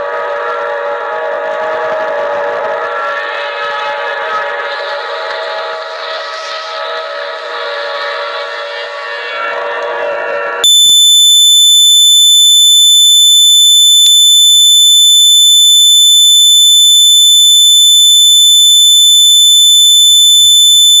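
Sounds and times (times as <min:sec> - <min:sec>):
continuous high-pitched alarm beep: 0:10.6 - 0:21.0.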